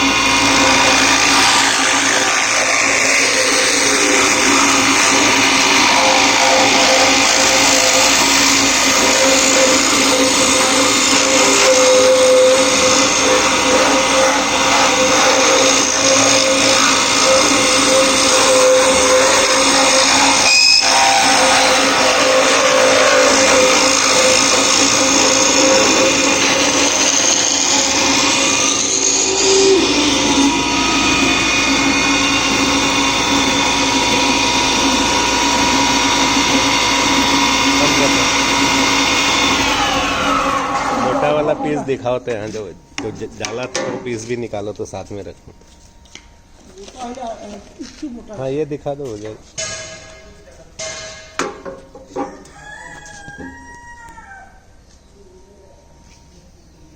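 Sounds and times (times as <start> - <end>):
milling machine whirring: 0.0 - 42.0.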